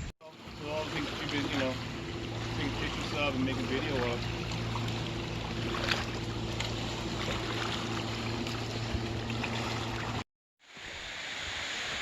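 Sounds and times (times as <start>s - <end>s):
low hum: 0.0s - 10.2s
falling and flowing water: 0.2s - 12.0s.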